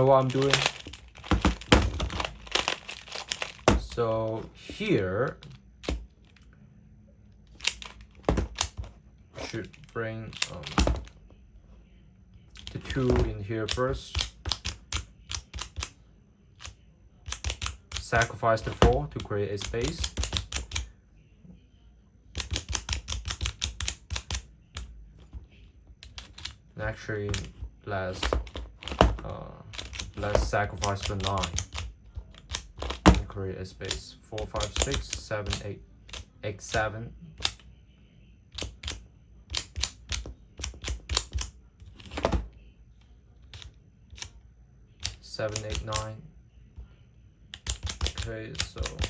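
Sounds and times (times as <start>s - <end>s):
puzzle cube clicking: 0.0s - 4.0s, 7.5s - 8.9s, 9.6s - 11.2s, 12.6s - 16.0s, 28.2s - 36.8s, 38.5s - 42.4s, 47.6s - 49.0s
plastic puzzle tiles clicking: 38.6s - 42.4s.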